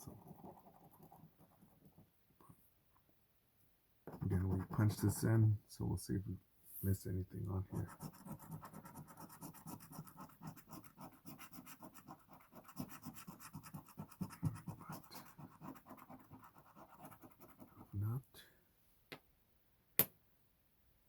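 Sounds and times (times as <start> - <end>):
scratching lottery ticket: 7.7 - 18.0.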